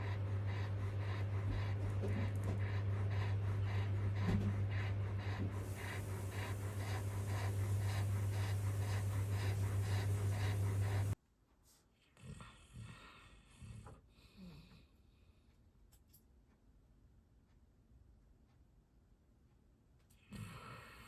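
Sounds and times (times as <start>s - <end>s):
dog panting: 0.0s - 11.2s
low hum: 0.0s - 11.2s.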